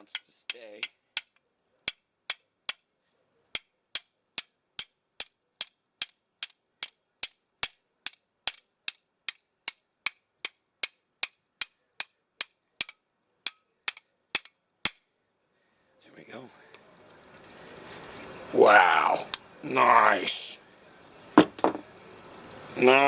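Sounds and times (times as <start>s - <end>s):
hammer striking metal pin: 0.0s - 2.9s, 3.5s - 15.0s.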